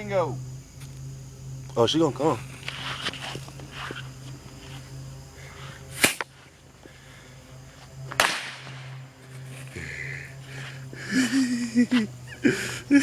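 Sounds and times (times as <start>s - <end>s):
firecrackers cracking: 6.0s - 6.3s, 8.1s - 8.9s.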